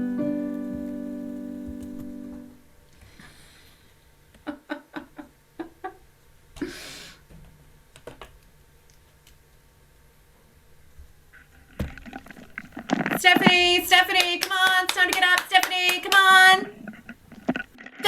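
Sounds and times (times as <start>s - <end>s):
held piano chord: 0.0s - 2.6s.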